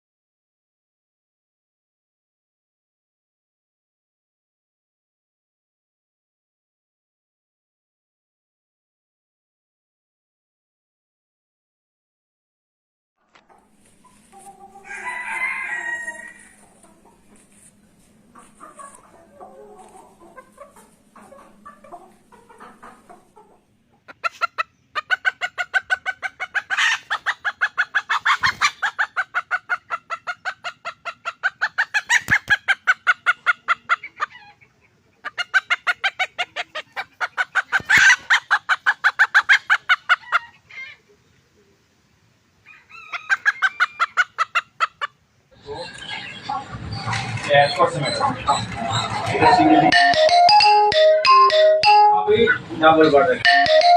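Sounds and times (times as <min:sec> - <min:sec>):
chickens clucking rapidly: 0:13.3 - 0:41.6, 0:42.6 - 0:51.7.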